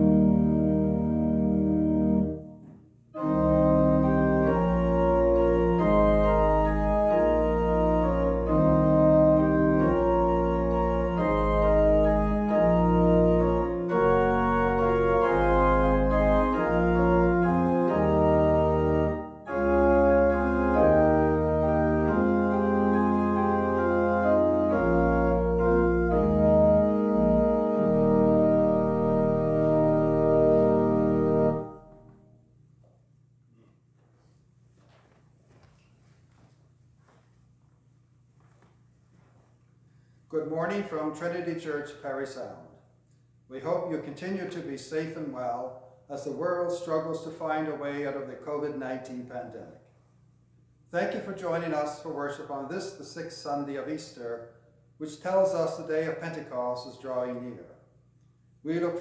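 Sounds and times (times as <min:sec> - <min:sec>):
church organ chords: 0:00.0 - 0:32.6.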